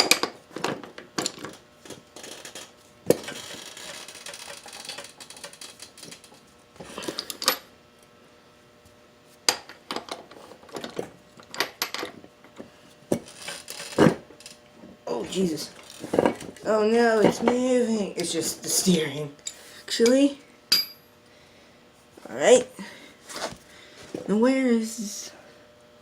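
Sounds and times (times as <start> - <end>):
metal tools clinking: 19.4 - 21.1.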